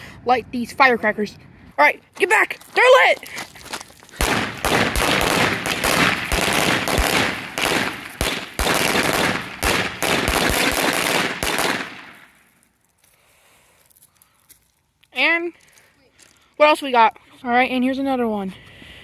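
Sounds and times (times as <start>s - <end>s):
firecrackers crackling: 2.8s - 12.7s.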